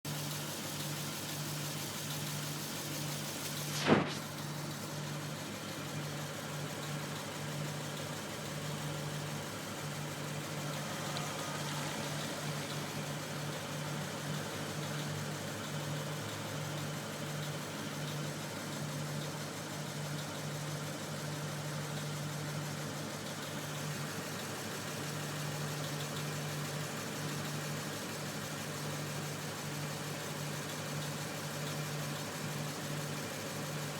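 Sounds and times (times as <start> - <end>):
car engine idling with knock: 0.0 - 33.9
sharp click: 3.7 - 4.2.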